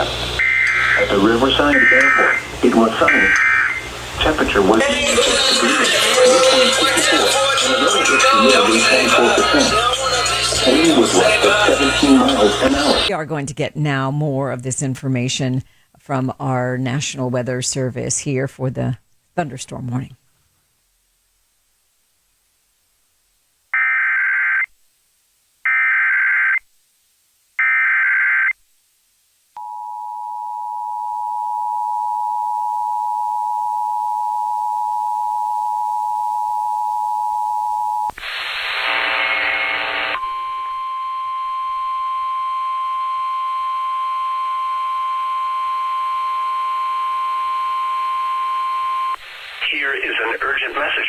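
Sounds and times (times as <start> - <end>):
data tone bursts: 0.0 - 13.1.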